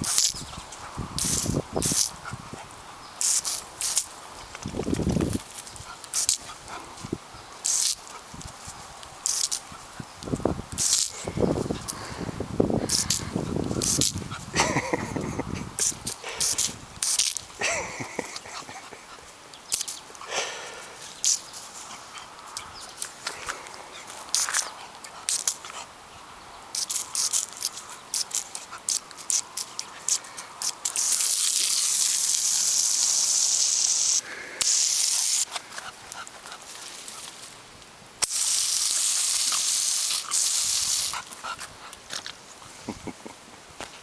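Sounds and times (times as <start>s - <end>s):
loud steady hiss: 0.0s - 35.8s, 36.7s - 41.4s
puppy clicks and rustles: 3.2s - 6.8s, 21.2s - 25.9s.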